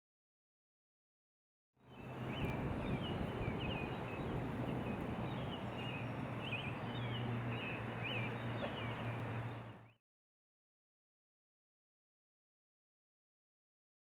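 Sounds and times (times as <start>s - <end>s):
birds chirping: 1.8s - 10.0s
boat motor humming: 2.0s - 9.9s.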